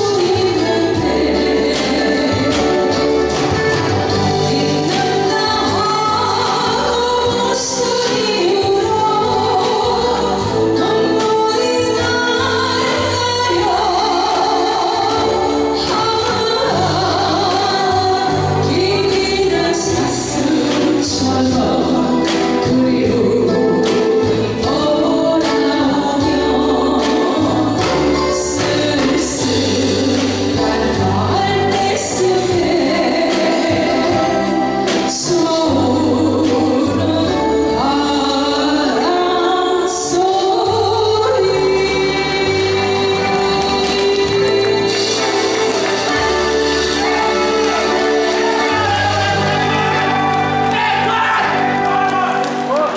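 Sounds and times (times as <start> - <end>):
live band bass and drums: 0.0 - 52.9
person singing a slow ballad: 0.0 - 52.9.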